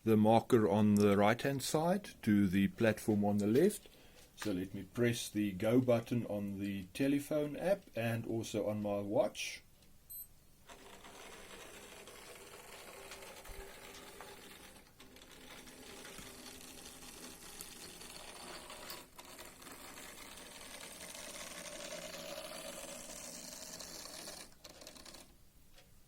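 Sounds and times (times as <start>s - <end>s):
model train motor whirring: 10.7s - 25.3s.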